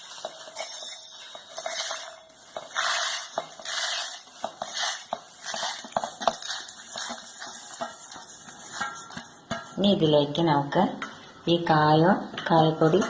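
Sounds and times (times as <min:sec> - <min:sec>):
grains rustling: 0:00.0 - 0:09.2
metal spoon scraping a vessel: 0:00.0 - 0:09.8.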